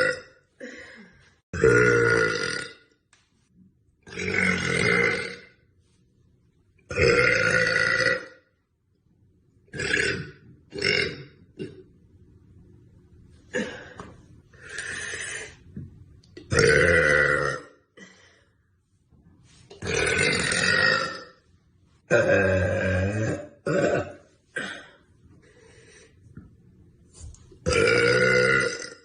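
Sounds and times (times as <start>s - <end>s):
woman burping: 0.0s - 2.9s, 4.1s - 5.5s, 16.4s - 18.2s, 19.8s - 21.3s, 22.1s - 25.0s, 27.6s - 29.0s.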